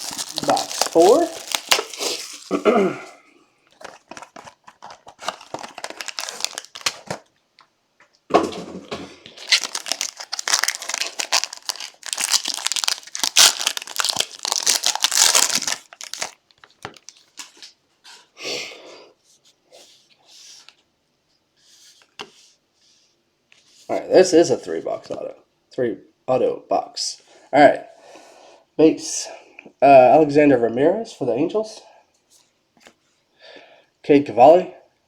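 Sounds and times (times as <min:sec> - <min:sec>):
plastic wrapping crinkling and tearing: 0:00.0 - 0:02.7, 0:03.8 - 0:07.3, 0:09.3 - 0:17.8.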